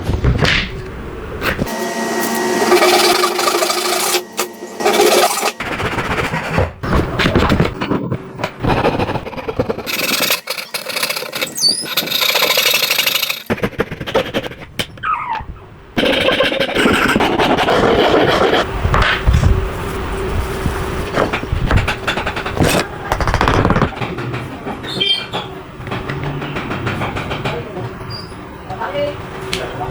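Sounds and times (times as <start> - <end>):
tools rasping and scraping on wood: 1.6 - 14.8, 16.0 - 18.7, 21.1 - 23.9.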